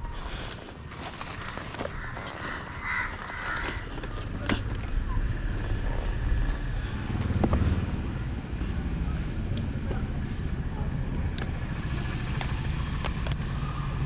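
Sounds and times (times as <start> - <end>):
harsh bird calls: 1.4 - 4.0.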